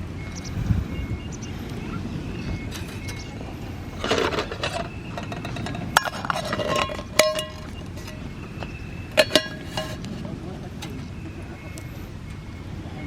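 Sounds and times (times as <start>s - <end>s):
rustling scrape: 4.0s - 8.2s
metal cookware clinking: 4.0s - 8.3s, 9.2s - 10.0s.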